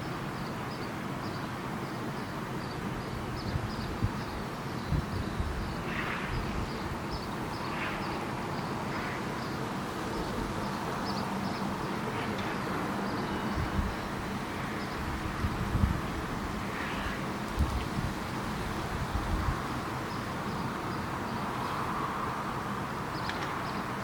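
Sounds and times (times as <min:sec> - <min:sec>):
wind on microphone: 0:03.3 - 0:07.4, 0:13.4 - 0:14.2, 0:14.8 - 0:20.2.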